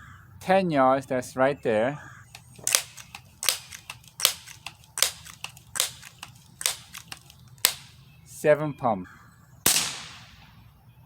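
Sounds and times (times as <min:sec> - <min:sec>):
air pistol pump lever clacks: 0:02.3 - 0:08.0
soft clicks: 0:02.3 - 0:08.0.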